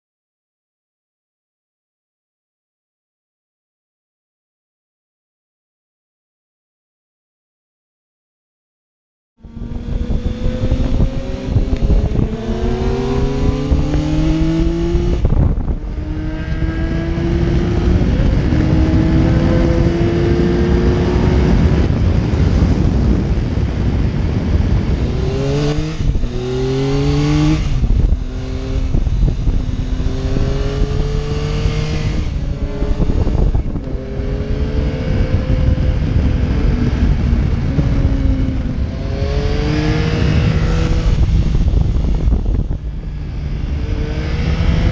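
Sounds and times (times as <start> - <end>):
motorcycle engine accelerating: 9.4 - 44.9
wind rush: 9.4 - 44.9.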